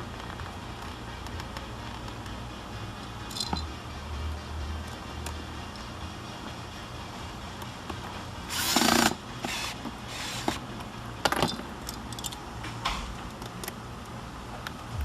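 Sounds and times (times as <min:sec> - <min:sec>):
parts clicking and knocking: 0:03.0 - 0:03.7, 0:07.6 - 0:14.8
power drill bursts: 0:08.5 - 0:10.4.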